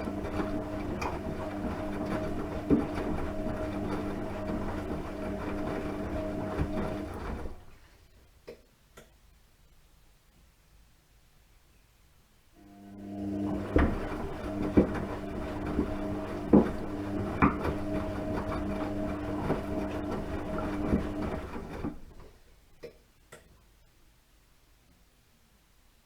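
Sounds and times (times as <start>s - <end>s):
washing machine running: 0.0s - 7.8s, 12.6s - 22.4s.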